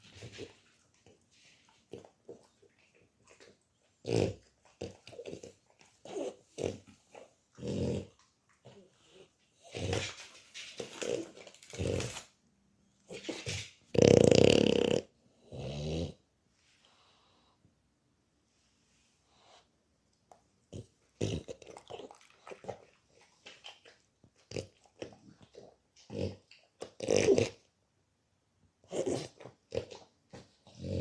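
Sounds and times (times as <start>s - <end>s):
dog grumbling: 7.5s - 8.2s, 13.9s - 16.2s.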